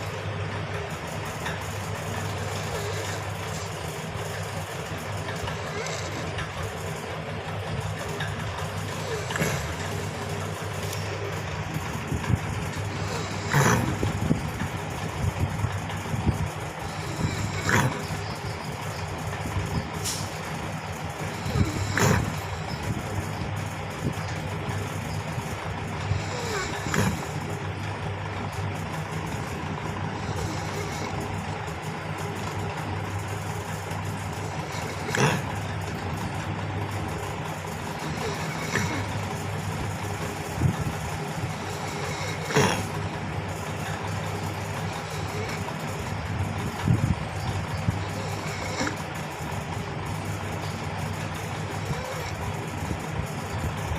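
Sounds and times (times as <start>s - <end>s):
pet snoring: 0.0s - 53.9s.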